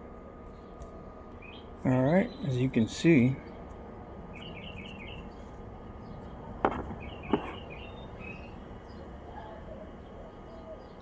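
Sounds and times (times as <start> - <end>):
low background hum: 0.0 - 11.0
small bird chirping: 3.4 - 11.0.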